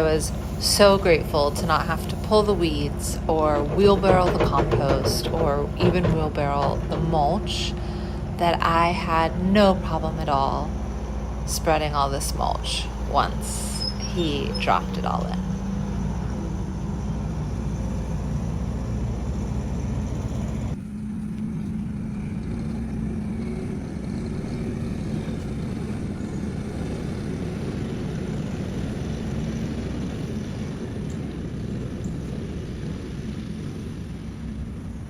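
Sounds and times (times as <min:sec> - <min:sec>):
skid steer engine rumbling: 0:00.0 - 0:35.0.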